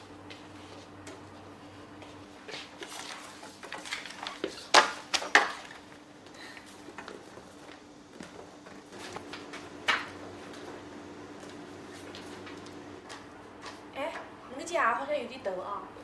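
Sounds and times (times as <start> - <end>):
objects clattering: 2.6 - 10.2.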